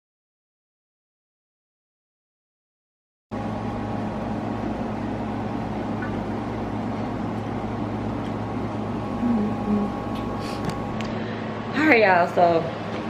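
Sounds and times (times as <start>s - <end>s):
mechanical hum with held tones: 3.3s - 13.0s.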